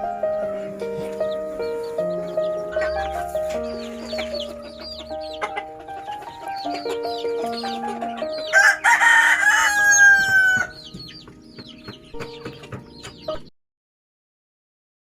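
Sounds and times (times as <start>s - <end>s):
background music: 0.0s - 13.5s
rapid high chirps: 0.2s - 13.2s
rooster crowing: 7.7s - 10.9s.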